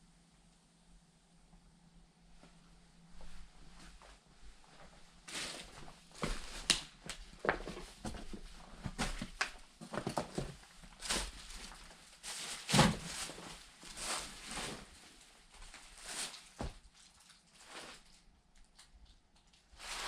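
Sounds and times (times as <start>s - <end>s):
crunching footsteps: 3.2s - 15.0s.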